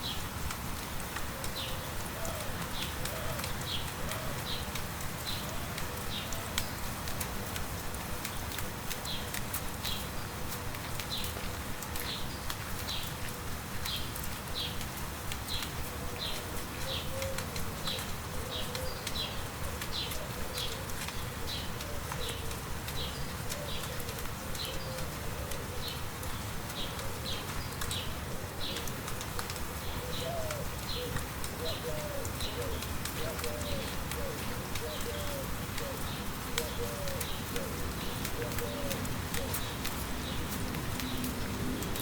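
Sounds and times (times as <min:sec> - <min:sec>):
light steady rain: 0:00.0 - 0:42.0.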